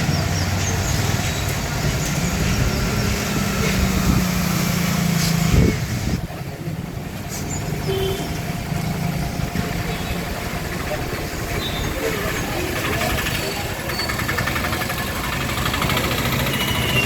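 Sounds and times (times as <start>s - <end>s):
traffic noise: 0.0s - 17.0s
vehicle engine running: 0.0s - 17.0s
engine knock: 7.9s - 17.0s.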